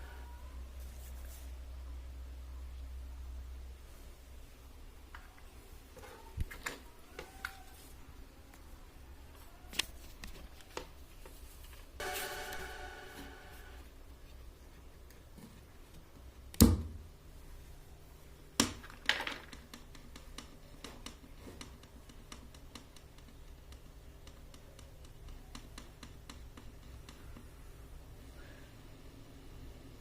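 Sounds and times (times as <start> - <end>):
faint low hum: 0.0 - 30.0
small clicks and taps: 18.6 - 27.5.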